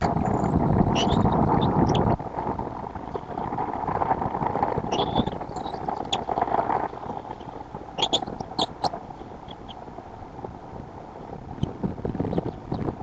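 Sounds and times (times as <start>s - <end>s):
wind buffeting microphone: 0.0s - 13.0s
high bird chirps: 1.0s - 2.0s, 4.9s - 6.2s, 8.0s - 8.9s.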